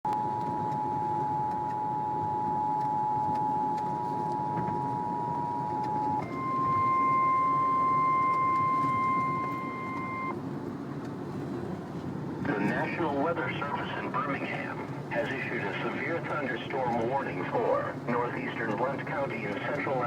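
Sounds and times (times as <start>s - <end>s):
two-tone alert signal: 0.1s - 10.3s
high warning alarm tone: 0.1s - 10.4s.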